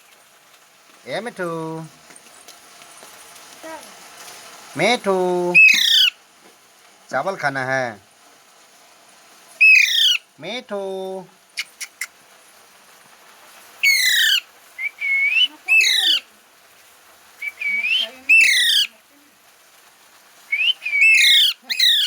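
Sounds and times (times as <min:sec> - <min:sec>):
parrot screeching: 0:05.6 - 0:06.2, 0:09.6 - 0:10.3, 0:13.8 - 0:16.3, 0:17.4 - 0:18.9, 0:20.5 - 0:22.0
soft rising parrot call: 0:05.6 - 0:06.2, 0:09.6 - 0:10.2, 0:13.8 - 0:16.3, 0:17.4 - 0:18.9, 0:20.5 - 0:22.0.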